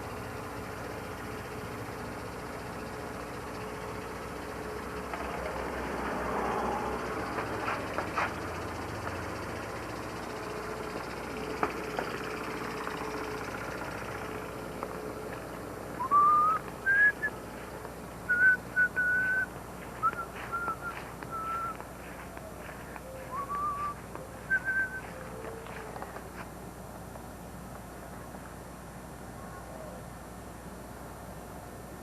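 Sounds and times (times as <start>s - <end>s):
steady low hum: 0.0s - 32.0s
person whistling: 16.0s - 17.4s, 18.3s - 21.8s, 23.2s - 25.2s.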